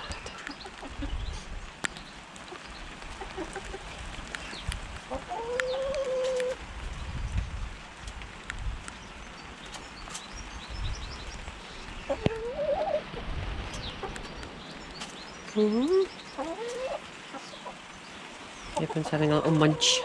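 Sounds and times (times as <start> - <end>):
small birds chirping: 0.0 - 7.6, 8.8 - 20.0
hens calling: 5.0 - 6.6, 12.1 - 14.8, 15.5 - 18.0, 18.7 - 20.0.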